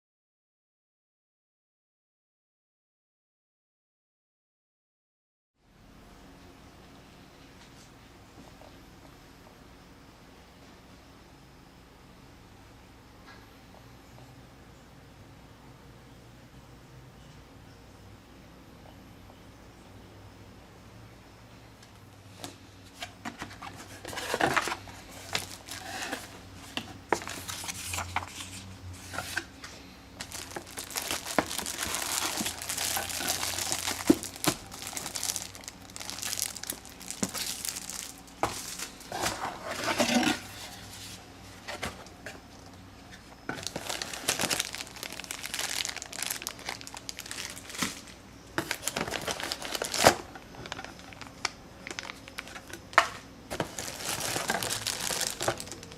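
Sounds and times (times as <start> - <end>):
plastic and paper crinkling: 22.4 - 42.0, 43.5 - 55.9.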